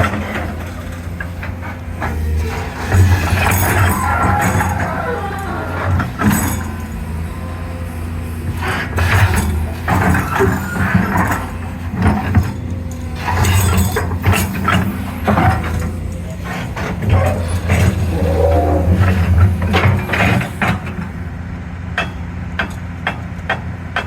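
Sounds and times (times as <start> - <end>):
metallic clanks of excavator joints: 0.0 - 21.3
diesel engine running: 0.0 - 24.0.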